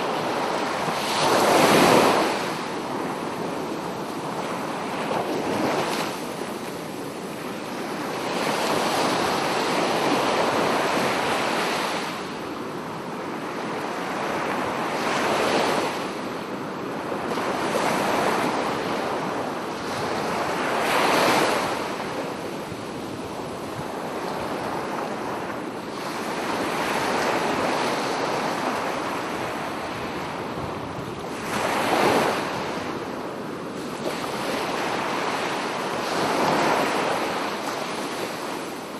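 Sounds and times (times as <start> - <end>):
waves breaking on a beach: 0.0 - 38.9.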